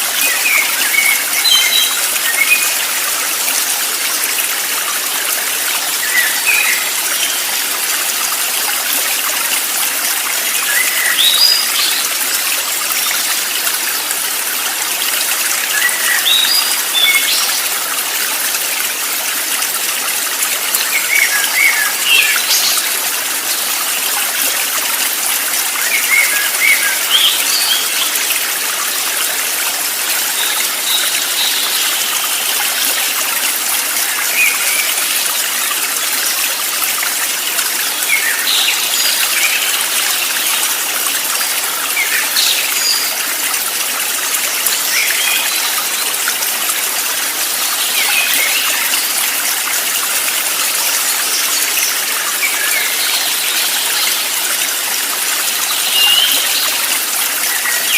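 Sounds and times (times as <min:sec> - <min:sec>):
stream water trickling: 0:00.0 - 0:57.9
small birds chirping: 0:51.2 - 0:57.9.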